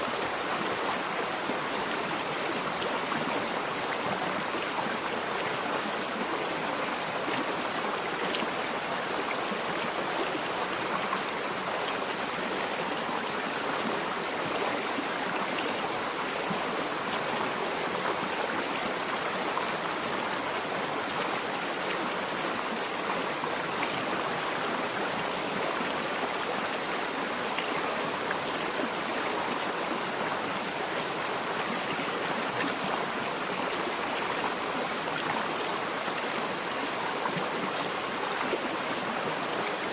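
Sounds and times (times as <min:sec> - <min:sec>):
river flowing over rocks: 0:00.0 - 0:39.9.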